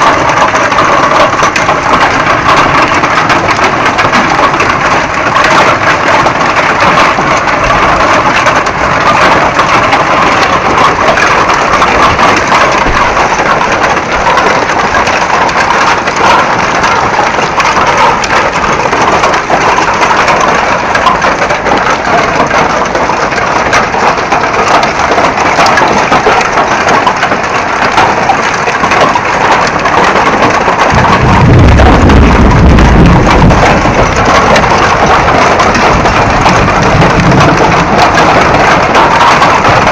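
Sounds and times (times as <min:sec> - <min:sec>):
hail clattering: 0:00.0 - 0:39.9
low rumble: 0:30.9 - 0:38.8.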